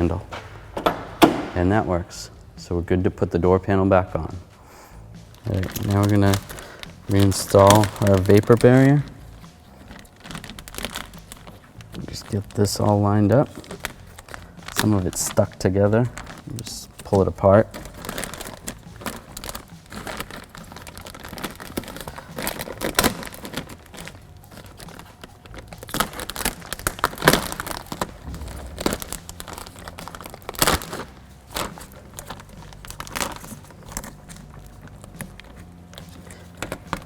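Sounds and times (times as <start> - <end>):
plastic sheet crinkling: 5.4 - 37.0.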